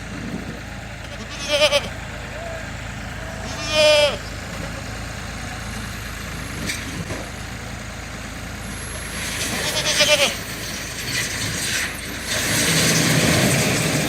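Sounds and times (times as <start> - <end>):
goat bleating: 1.0 - 2.6, 3.2 - 5.1, 9.4 - 10.4.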